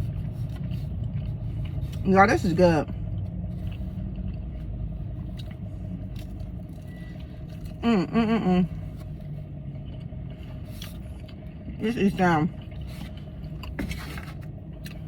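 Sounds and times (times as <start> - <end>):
car cabin engine rumble: 0.0 - 15.0.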